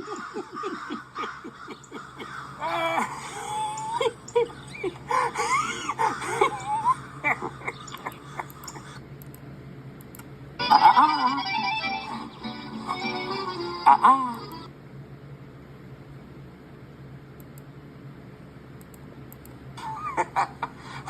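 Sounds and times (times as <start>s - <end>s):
rapid silly laughs: 0.0s - 9.0s, 19.8s - 21.0s.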